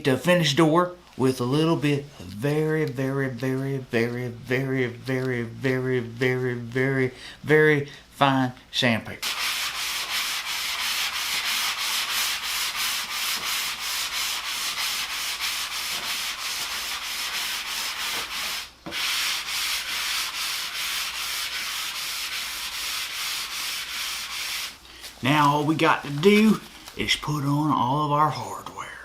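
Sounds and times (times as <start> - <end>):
sandpaper rubbing on wood: 9.2 - 26.6.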